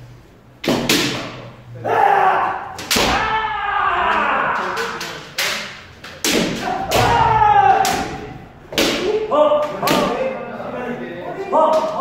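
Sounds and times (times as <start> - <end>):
kiai shouts: 1.8 - 5.0, 6.5 - 10.1
bamboo sword strikes cracking: 2.8 - 3.3, 4.5 - 7.2.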